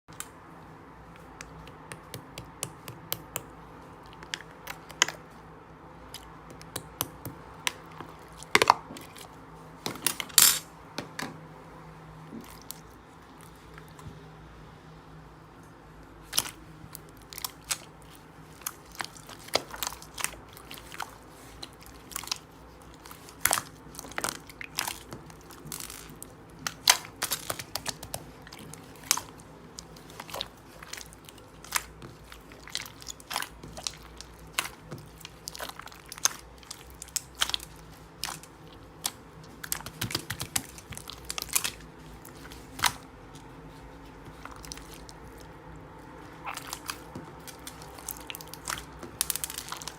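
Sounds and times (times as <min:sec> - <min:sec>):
slime clicking and crackling: 0:16.2 - 0:49.9.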